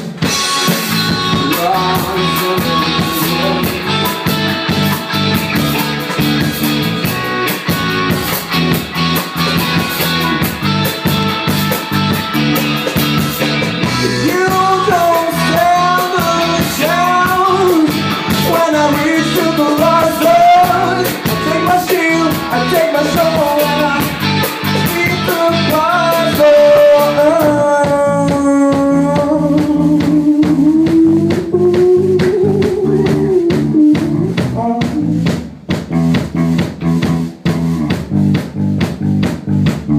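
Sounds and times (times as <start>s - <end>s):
guitar rock music: 0.0s - 39.9s
lead guitar melody bending: 0.2s - 30.0s.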